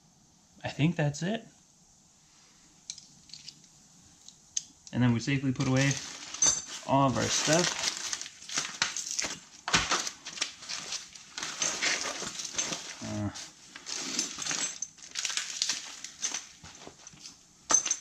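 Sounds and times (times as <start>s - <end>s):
metal tools clinking: 2.9s - 3.7s, 5.6s - 9.4s, 10.2s - 18.0s
rustling: 4.9s - 18.0s
person grunting: 13.0s - 13.5s.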